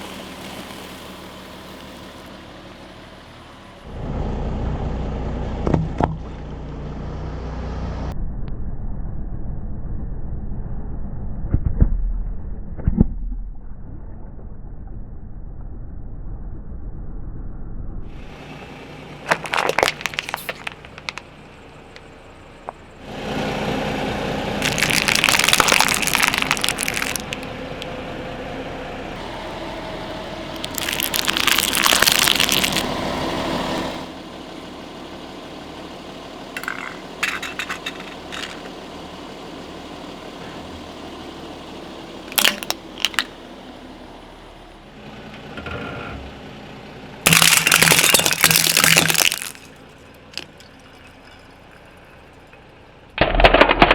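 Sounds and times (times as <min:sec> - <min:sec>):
engine and tyre rumble: 0:00.0 - 0:53.9
tyres crushing brittle objects: 0:19.2 - 0:21.3, 0:24.6 - 0:27.9, 0:30.5 - 0:33.0, 0:36.6 - 0:38.8, 0:42.3 - 0:43.4, 0:47.3 - 0:50.6, 0:53.2 - 0:53.9
sharp cracks: 0:19.2 - 0:22.8, 0:24.6 - 0:28.0, 0:30.5 - 0:33.0, 0:42.3 - 0:43.4, 0:47.3 - 0:50.6, 0:53.1 - 0:53.9.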